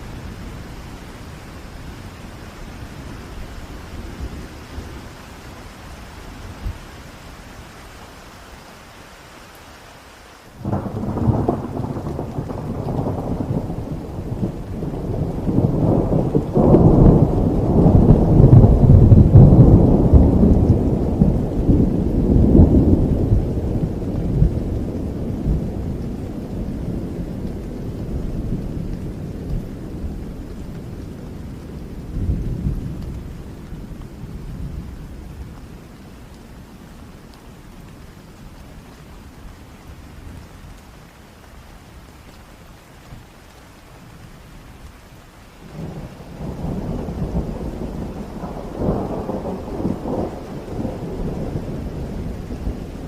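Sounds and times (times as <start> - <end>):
heavy rain hiss: 0.0 - 53.0
thunder rolling rumble: 10.6 - 35.6, 45.7 - 53.0.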